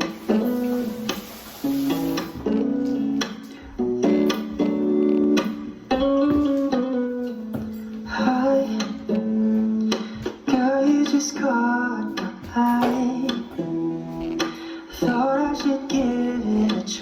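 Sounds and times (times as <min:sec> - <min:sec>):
person singing: 0:00.0 - 0:05.4, 0:08.0 - 0:17.0
strummed acoustic guitar: 0:00.0 - 0:14.8.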